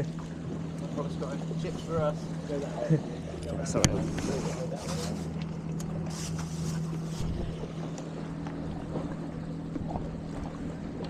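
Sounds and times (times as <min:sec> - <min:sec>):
boat engine running: 0:00.0 - 0:11.0
wind noise on microphone: 0:07.0 - 0:07.8.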